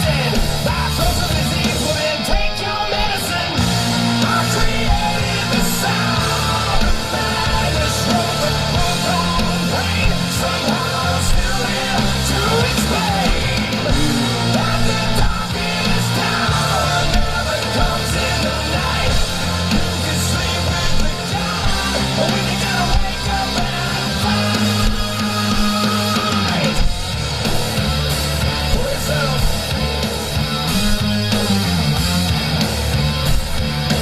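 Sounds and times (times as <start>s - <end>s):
man singing: 0.0s - 26.9s, 28.6s - 29.6s
distorted electric guitars: 0.0s - 34.0s
pounding drums: 0.0s - 34.0s.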